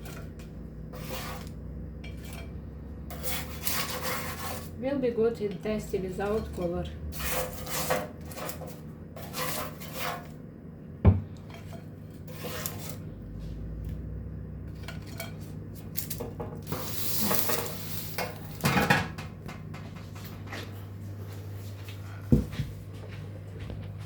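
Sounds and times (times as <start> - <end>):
utensils and dishes clinking: 14.7 - 20.4.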